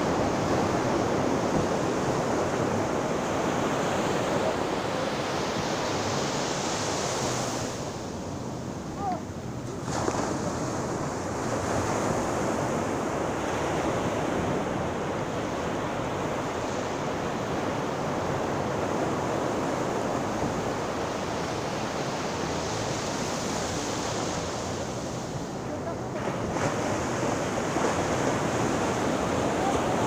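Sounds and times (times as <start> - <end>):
waves washing onto shore: 0.0 - 30.0.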